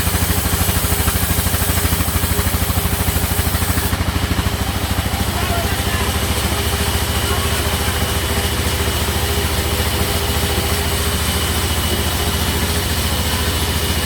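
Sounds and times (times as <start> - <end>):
sawmill machinery throbbing: 0.0 - 14.0.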